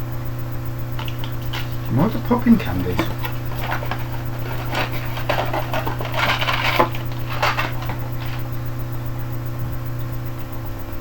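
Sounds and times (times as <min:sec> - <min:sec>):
low electrical hum: 0:00.0 - 0:11.0
packaging rustling: 0:01.0 - 0:08.6.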